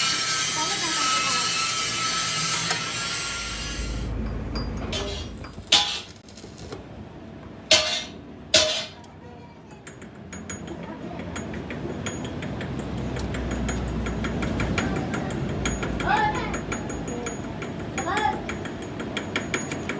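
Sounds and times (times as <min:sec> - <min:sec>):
ringing metallic clinks: 0:04.2 - 0:06.2, 0:11.4 - 0:19.9.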